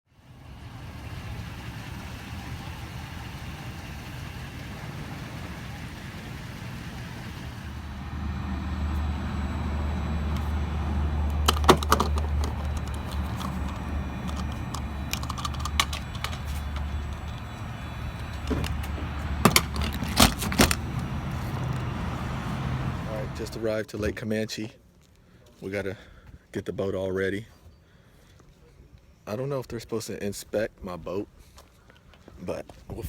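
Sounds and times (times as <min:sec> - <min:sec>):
vehicle engine humming: 0:00.1 - 0:23.8
sharp clicks and rattles: 0:07.8 - 0:23.6.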